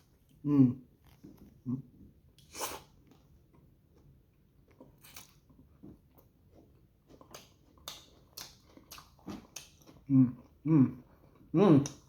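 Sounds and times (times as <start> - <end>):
chewing food: 3.0 - 12.0.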